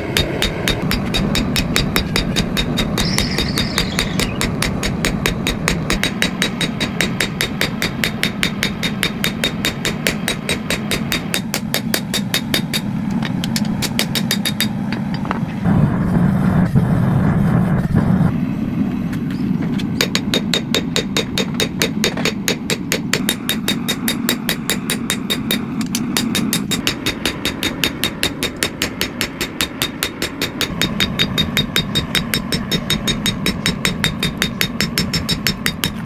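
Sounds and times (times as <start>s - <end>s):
power hammer blows: 0.0s - 15.8s.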